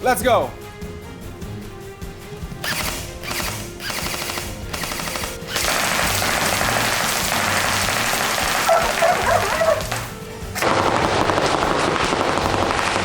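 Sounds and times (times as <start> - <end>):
airsoft gun firing bursts: 2.6 - 13.0.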